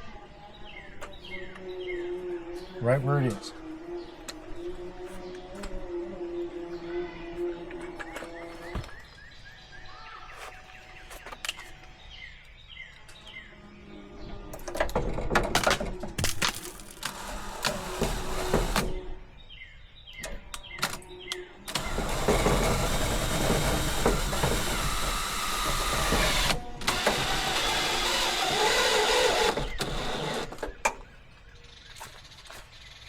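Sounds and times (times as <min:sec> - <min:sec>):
power drill driving screws: 0:16.6 - 0:19.1, 0:21.7 - 0:30.8.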